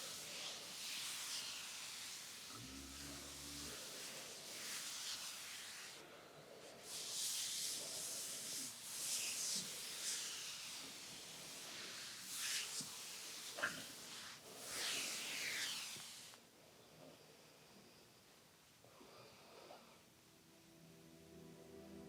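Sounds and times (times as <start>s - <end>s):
hands rubbing on skin: 0.0s - 2.5s, 3.8s - 6.0s, 6.9s - 16.4s.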